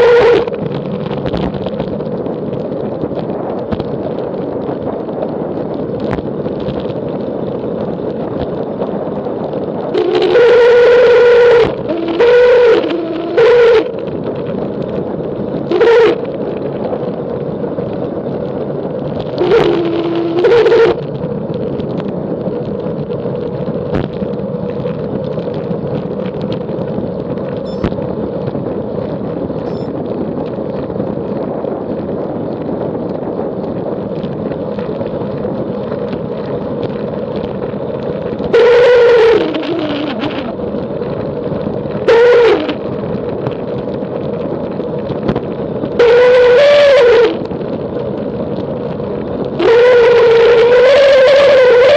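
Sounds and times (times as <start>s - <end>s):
loud pitched howl: 0.0s - 0.6s, 9.9s - 14.1s, 15.7s - 16.3s, 19.4s - 21.0s, 38.5s - 40.6s, 42.0s - 42.8s, 46.0s - 47.5s, 49.6s - 51.9s
wind and road rush: 0.0s - 51.9s.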